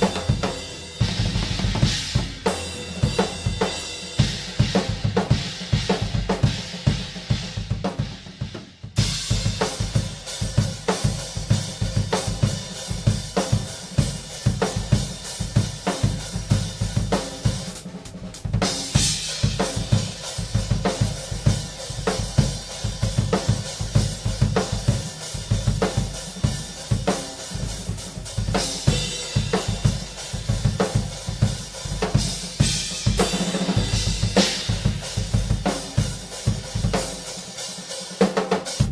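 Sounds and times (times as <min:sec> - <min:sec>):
cymbals: 0:00.0 - 0:08.0, 0:18.6 - 0:38.9
drum kit groove: 0:00.0 - 0:38.9.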